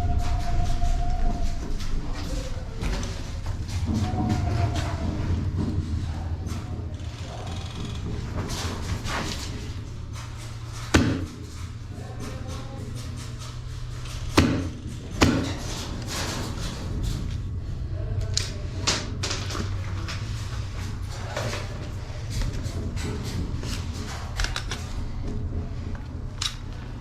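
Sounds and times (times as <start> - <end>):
steady low hum: 0.0 - 27.0
sharp knocks: 10.7 - 11.8, 14.1 - 15.8.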